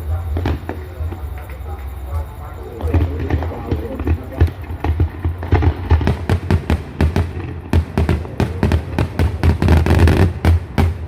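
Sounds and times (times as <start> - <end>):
fireworks bangs: 0.0 - 11.0.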